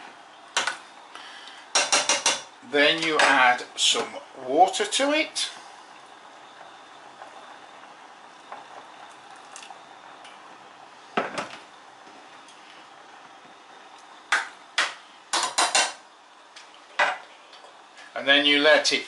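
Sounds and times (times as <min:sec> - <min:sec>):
soup simmering hiss: 0:00.0 - 0:01.9, 0:02.5 - 0:14.3.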